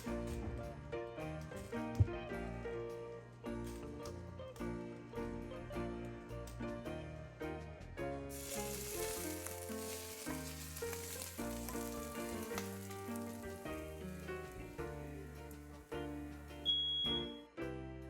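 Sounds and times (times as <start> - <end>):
background music: 0.0 - 18.0
food sizzling in a pan: 8.3 - 15.7.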